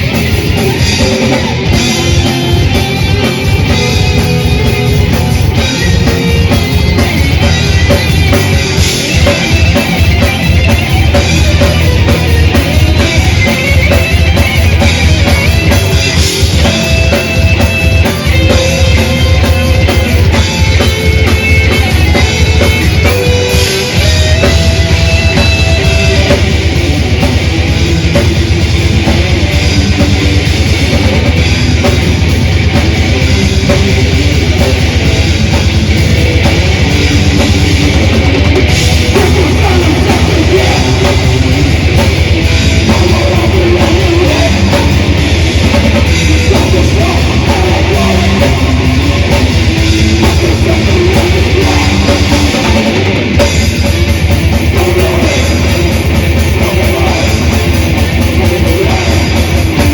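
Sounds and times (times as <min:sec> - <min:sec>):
bass guitar: 0:00.0 - 0:59.9
distorted electric guitars: 0:00.0 - 0:59.9
fast drum kit playing: 0:00.0 - 0:59.9.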